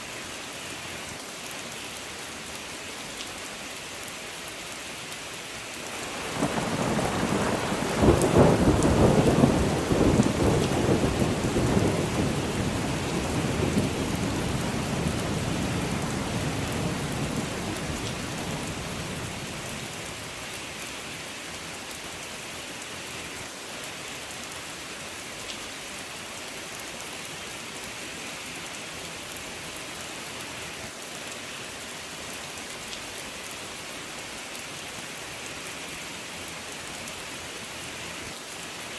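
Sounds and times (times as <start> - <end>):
steady rain: 0.0 - 38.9
thunder rumbling: 6.0 - 19.8.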